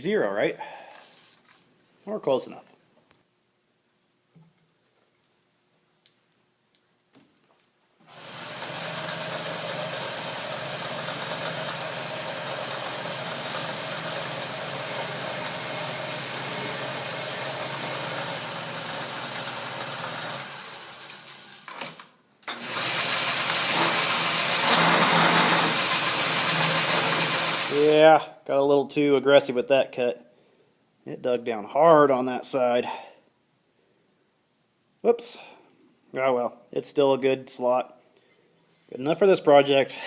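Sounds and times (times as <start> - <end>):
milling machine cutting metal: 8.1 - 21.6, 22.5 - 27.8.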